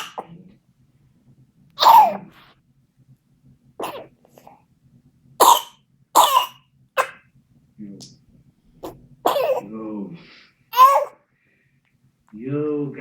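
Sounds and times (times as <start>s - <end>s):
baby coughing harshly: 0.0s - 0.4s, 1.8s - 2.3s, 3.8s - 4.5s, 5.4s - 7.3s, 8.8s - 9.7s, 10.7s - 11.2s.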